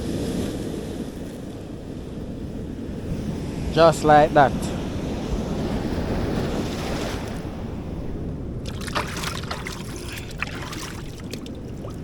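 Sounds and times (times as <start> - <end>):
wind and surf rumble: 0.0 - 12.0
sea water washing over rocks: 8.5 - 12.0
small splashes and trickles: 8.6 - 12.0.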